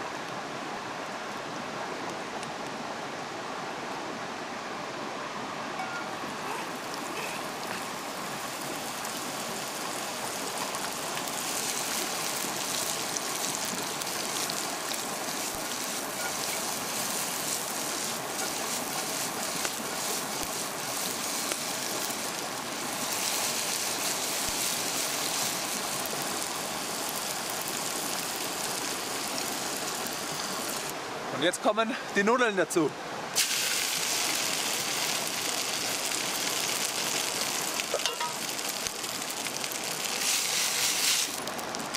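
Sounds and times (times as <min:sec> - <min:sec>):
bacon sizzling in frying pan: 0:06.5 - 0:30.9, 0:33.4 - 0:41.9.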